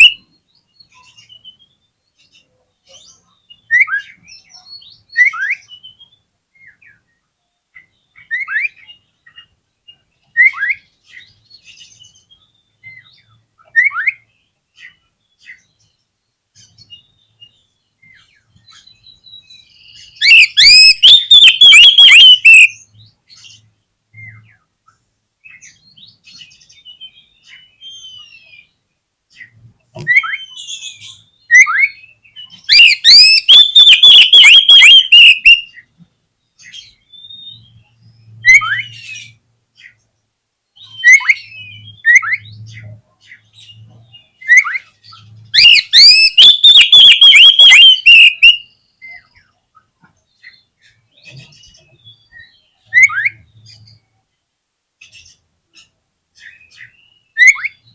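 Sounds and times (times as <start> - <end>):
bird whistling: 0.0 - 0.2, 20.1 - 22.8, 30.1 - 32.1, 32.7 - 35.8, 40.8 - 42.6, 45.6 - 49.3, 52.2 - 53.4, 56.5 - 57.9
bird fast sweeping notes: 20.4 - 22.7.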